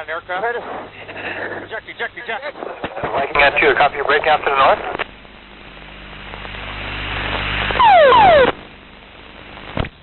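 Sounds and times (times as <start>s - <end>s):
loud burst with falling tones: 7.7s - 8.6s.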